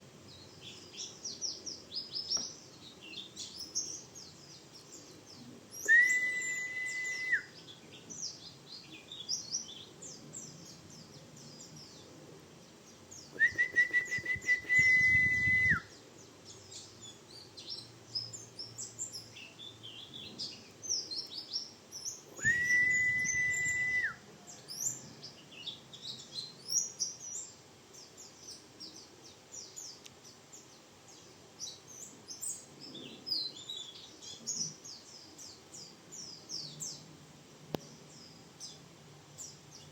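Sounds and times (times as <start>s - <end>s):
bird twittering song: 0.0s - 37.1s, 37.8s - 39.9s
loud steady whistle tone: 5.8s - 7.5s, 13.4s - 15.9s, 22.4s - 24.2s.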